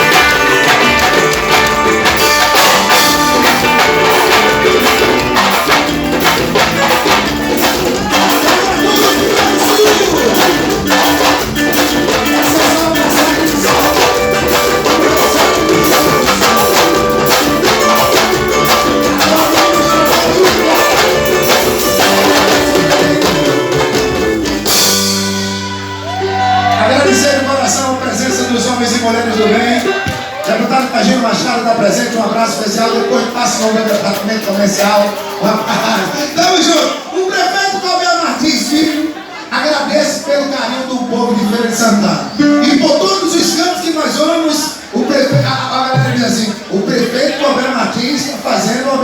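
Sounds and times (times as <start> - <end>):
folk music on tambourines and drums: 0.0 - 26.1.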